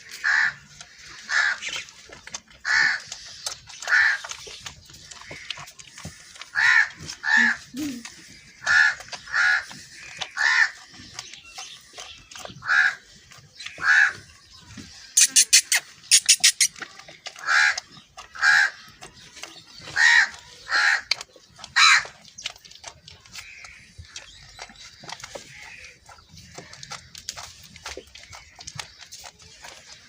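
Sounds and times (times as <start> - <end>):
sharp clicks: 15.2 - 16.8.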